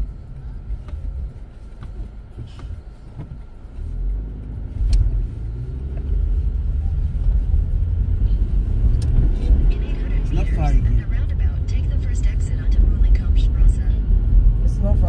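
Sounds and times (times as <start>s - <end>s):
car engine: 0.0s - 15.0s
road rumble: 0.0s - 15.0s
click: 4.8s - 5.1s.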